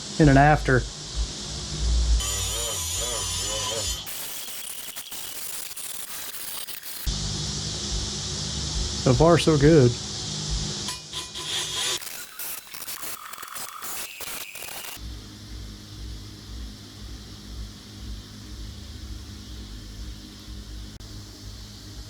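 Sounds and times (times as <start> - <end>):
steady low hum: 0.0 - 4.1, 7.0 - 11.8, 15.0 - 22.0
wire brush grinding rusty metal: 2.2 - 7.1, 10.9 - 15.0.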